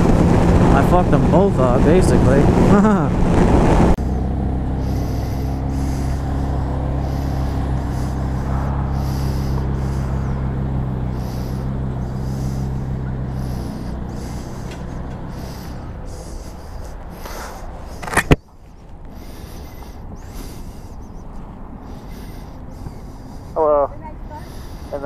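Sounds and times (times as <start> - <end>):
vehicle engine idling: 3.9 - 25.0.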